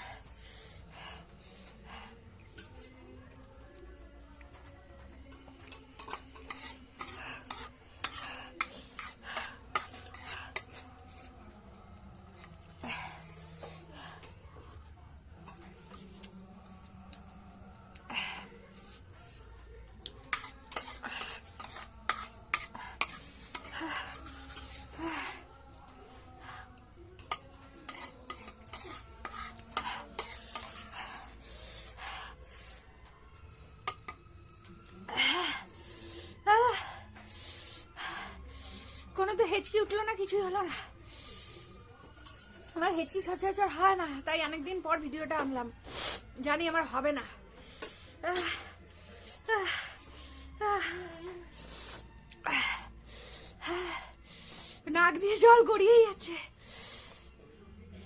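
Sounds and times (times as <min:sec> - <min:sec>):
cutlery clinking against a bowl: 0:05.4 - 0:11.3, 0:20.3 - 0:24.8, 0:27.2 - 0:31.0, 0:33.8 - 0:34.2.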